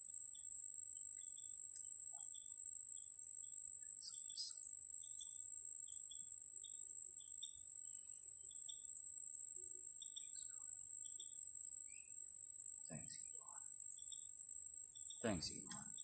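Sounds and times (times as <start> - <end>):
insect chirps: 0.0 - 16.0
insects trilling: 0.0 - 16.0.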